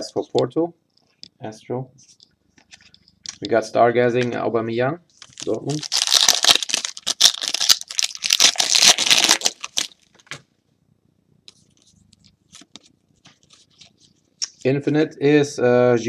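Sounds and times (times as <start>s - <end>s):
foil wrapper tearing and crinkling: 5.2s - 10.1s.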